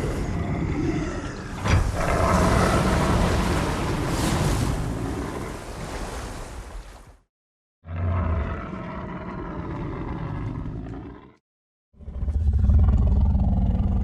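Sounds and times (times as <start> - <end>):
deep monster roar: 0.0 - 3.5, 7.8 - 11.4, 12.0 - 14.0.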